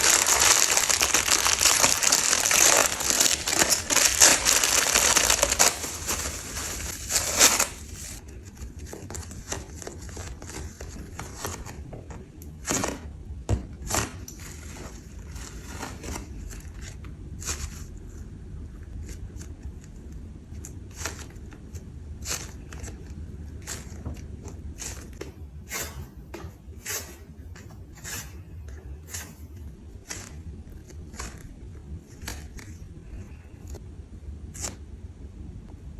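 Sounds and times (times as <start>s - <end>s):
plastic packaging crinkling: 0.0s - 13.1s.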